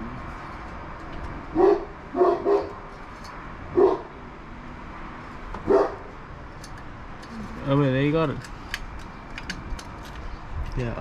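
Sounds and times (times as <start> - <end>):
dog barking: 1.6 - 2.8, 3.8 - 4.1, 5.6 - 6.1.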